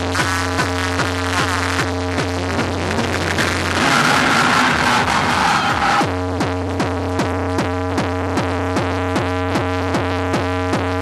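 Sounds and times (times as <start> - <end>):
synthesizer chords: 0.0 - 7.5
electronic dance beat: 0.0 - 11.0.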